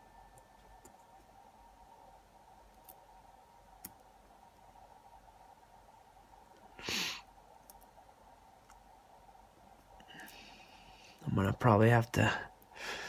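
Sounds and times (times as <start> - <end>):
person sighing: 6.8 - 7.2.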